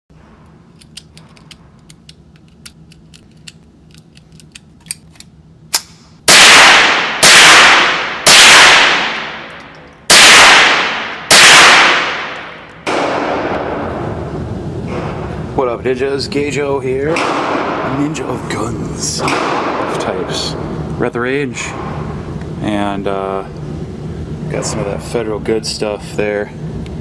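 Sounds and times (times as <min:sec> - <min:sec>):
steady noise: 0:05.4 - 0:27.0
rifle shots with echo: 0:06.3 - 0:09.5, 0:10.1 - 0:14.1, 0:17.1 - 0:18.1, 0:19.2 - 0:20.3.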